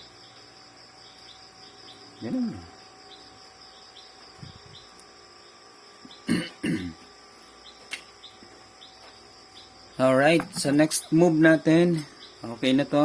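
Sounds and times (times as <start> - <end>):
crickets chirping: 0.0 - 13.0
man coughing: 6.2 - 7.0.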